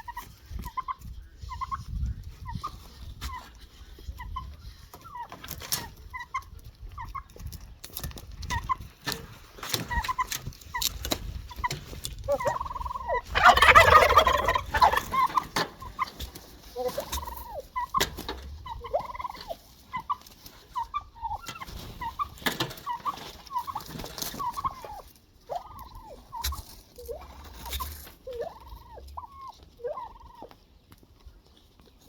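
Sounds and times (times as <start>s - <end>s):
turkeys gobbling: 9.8s - 10.3s, 11.5s - 30.6s.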